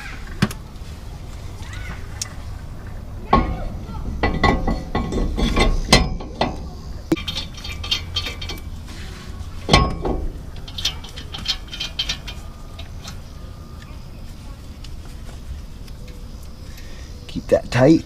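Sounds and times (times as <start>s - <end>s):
metal brake parts clinking: 3.2s - 14.0s
loud ringing metal knock: 3.3s - 8.6s, 9.7s - 12.3s.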